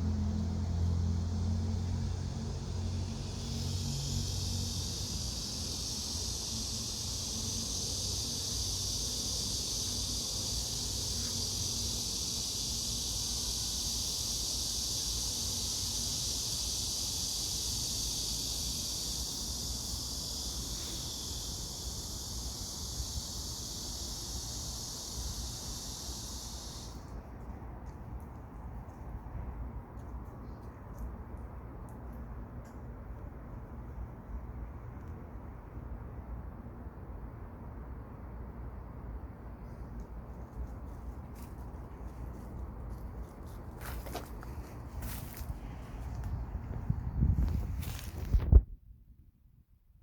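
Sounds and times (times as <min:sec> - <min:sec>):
high-pitched insect chorus: 0:00.0 - 0:29.5, 0:39.6 - 0:48.6.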